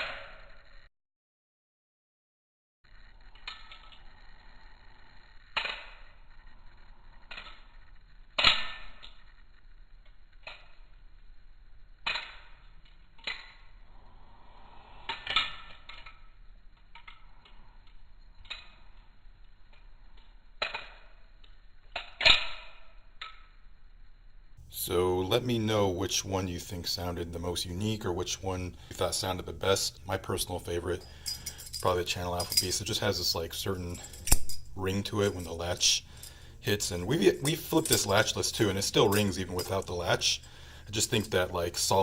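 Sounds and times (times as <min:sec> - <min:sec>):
butterfly knife handles clacking: 0:28.1 - 0:42.0.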